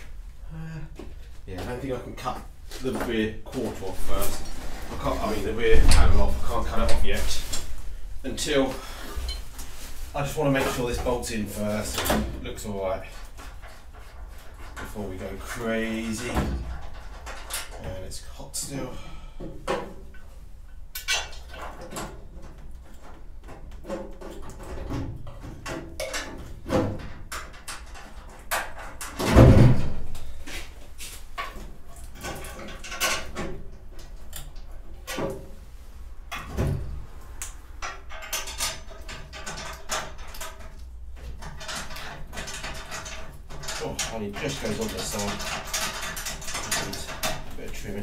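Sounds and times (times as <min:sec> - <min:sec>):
metal clicks and clanks: 0:10.6 - 0:30.8, 0:31.4 - 0:35.6, 0:36.3 - 0:48.0.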